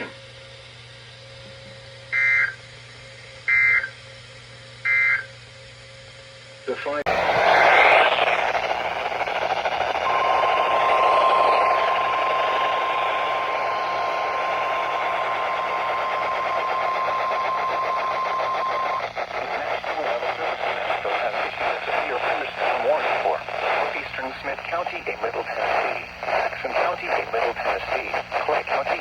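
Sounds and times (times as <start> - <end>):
steady warning beep: 2.2 - 2.6, 3.5 - 3.9, 4.9 - 5.3, 8.1 - 19.1
radio static hiss: 6.7 - 29.0.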